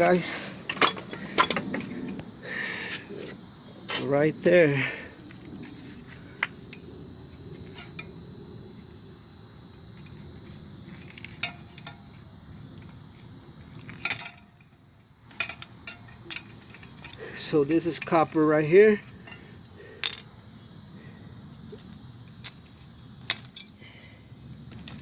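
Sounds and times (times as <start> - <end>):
scrap metal clinking: 0.2 - 2.2, 7.6 - 8.2, 10.9 - 12.9, 13.7 - 20.3, 22.3 - 23.8, 24.7 - 25.0.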